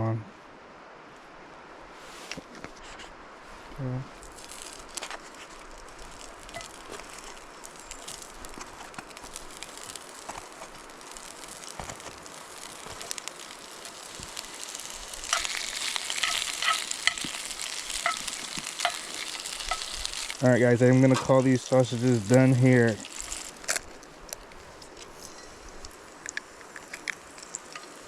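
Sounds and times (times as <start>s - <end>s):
sausages sizzling in a pan: 3.8s - 28.0s.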